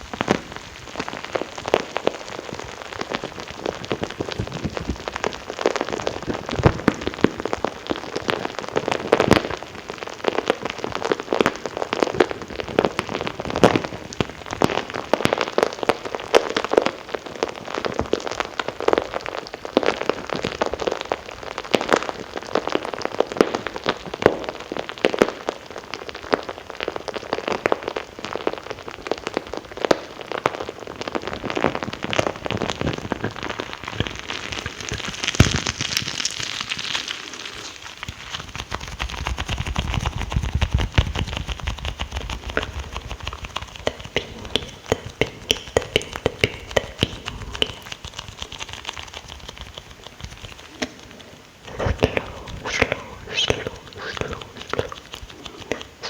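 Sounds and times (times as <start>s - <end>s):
wet mouth clicks and smacks: 32.1s - 56.0s.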